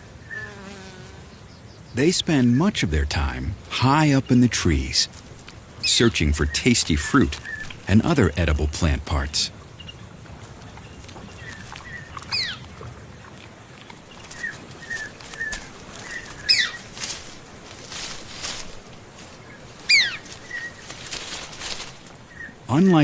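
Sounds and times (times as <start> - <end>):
rustles: 3.2 - 22.7
bird chirps: 14.2 - 16.8.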